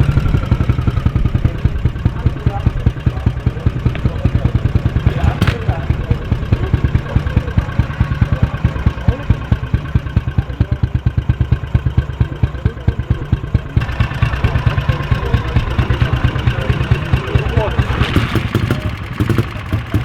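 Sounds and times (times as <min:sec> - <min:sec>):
motorcycle engine thumping: 0:00.0 - 0:20.0.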